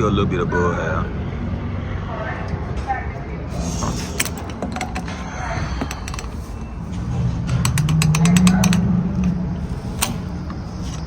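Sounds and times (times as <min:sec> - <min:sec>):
pump nozzle clicking and rattling: 0:05.8 - 0:11.0.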